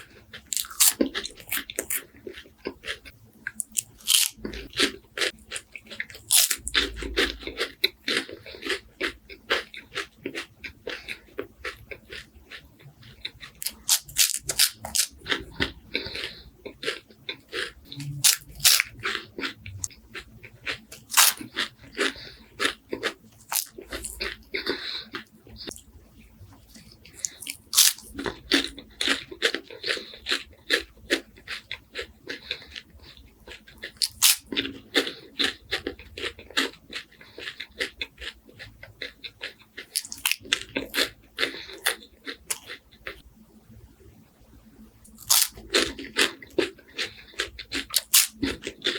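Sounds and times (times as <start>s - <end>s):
crunching of crispy wafers: 0.0s - 25.9s, 26.6s - 43.2s, 45.1s - 48.9s
wet mouth sounds: 13.0s - 25.9s, 26.7s - 30.2s, 32.3s - 38.7s, 39.5s - 43.2s, 45.1s - 48.9s.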